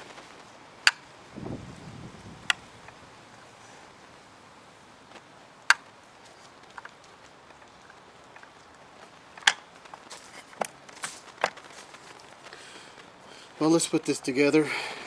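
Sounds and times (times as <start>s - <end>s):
handling noise: 4.9s - 14.1s.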